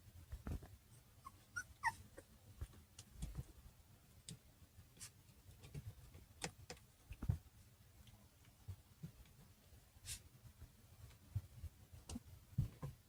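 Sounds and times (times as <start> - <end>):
puppy whimpering yips: 1.2 - 2.3.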